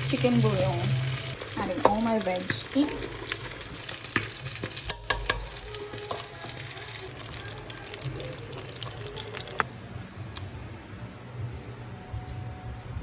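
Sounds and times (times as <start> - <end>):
soup hissing in a pot: 0.0 - 9.7
utensil clinking against pot: 1.4 - 9.6.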